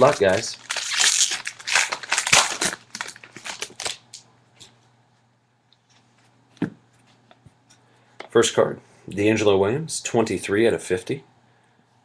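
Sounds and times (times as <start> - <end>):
packaging crinkling and tearing: 0.0 - 4.2.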